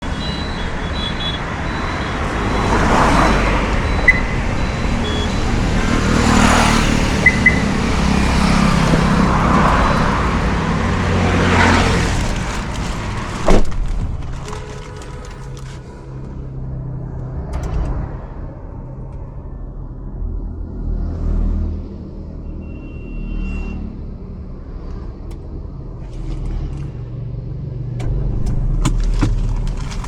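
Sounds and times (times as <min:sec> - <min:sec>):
vehicles passing: 0:00.0 - 0:30.0
loud thump: 0:13.4 - 0:14.0.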